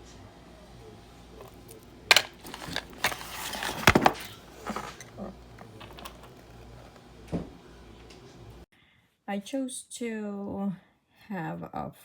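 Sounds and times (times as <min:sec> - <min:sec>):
rustling: 0:01.4 - 0:07.3.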